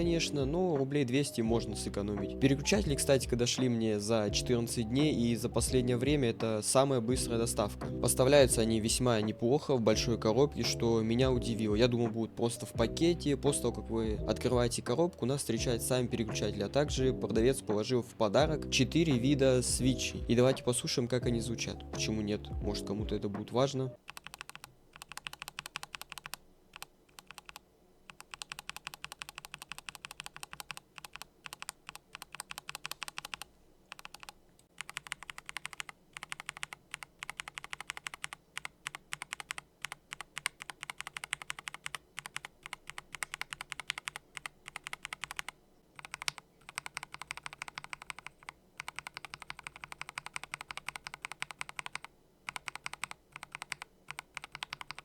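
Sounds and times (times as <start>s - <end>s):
mechanical keyboard typing: 24.0s - 55.0s.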